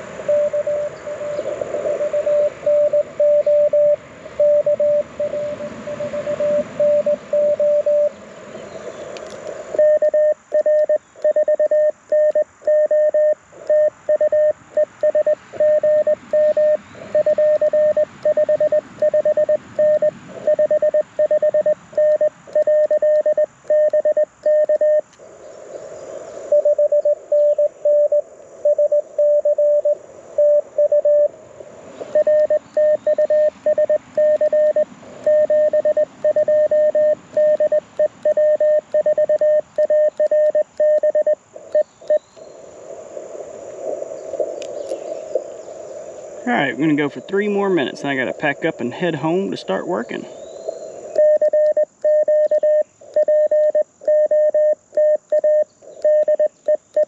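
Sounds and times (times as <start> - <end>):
receiver hiss: 0.0 - 57.0
morse code tone beeping: 0.2 - 8.1, 9.7 - 25.1, 26.5 - 31.3, 32.1 - 42.2, 51.2 - 57.0.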